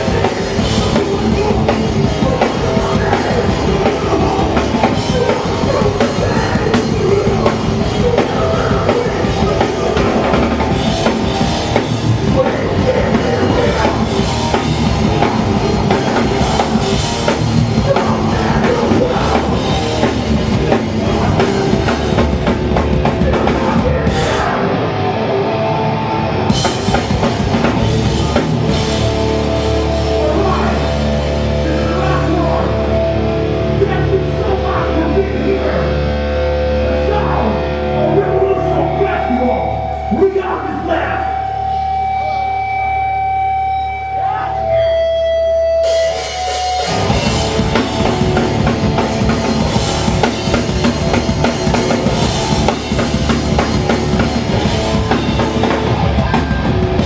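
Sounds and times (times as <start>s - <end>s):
fast drum kit: 0.0s - 24.9s, 26.5s - 34.0s, 45.8s - 57.0s
distorted guitars: 0.0s - 57.0s
shouted vocals: 12.2s - 22.2s, 23.0s - 25.5s.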